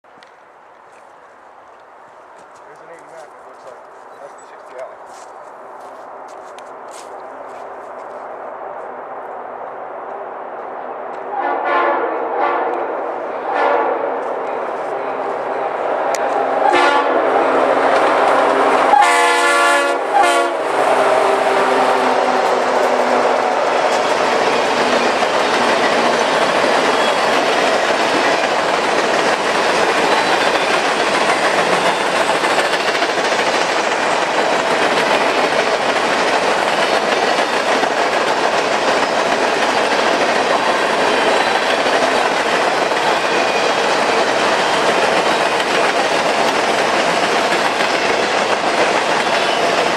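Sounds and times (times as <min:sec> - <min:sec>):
locomotive air horn blasts: 0:11.4 - 0:12.8, 0:13.5 - 0:14.1, 0:16.6 - 0:17.3, 0:18.0 - 0:23.7
train wheel clatter: 0:22.0 - 0:49.9.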